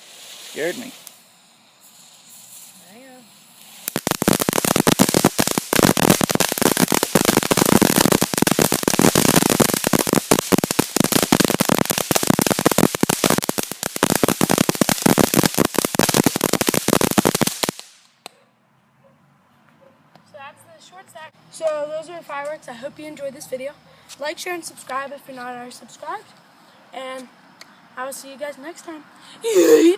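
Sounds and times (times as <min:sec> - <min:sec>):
firework barrage crackling pops: 0:00.0 - 0:01.2, 0:01.8 - 0:18.4.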